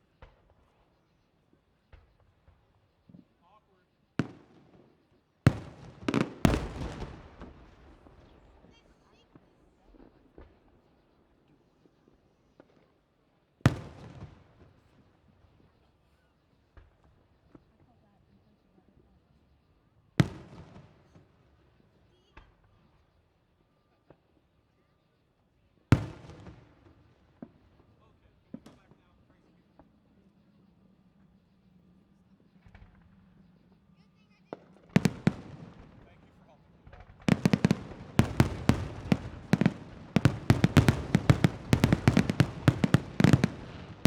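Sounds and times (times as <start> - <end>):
small fireworks pops: 0.0 - 3.6, 4.2 - 18.4, 22.0 - 23.2, 23.9 - 24.5, 25.9 - 30.6, 32.4 - 44.0
fireworks crackling: 5.5 - 8.0, 34.6 - 44.0
fireworks bangs: 5.5 - 8.4, 34.5 - 44.0.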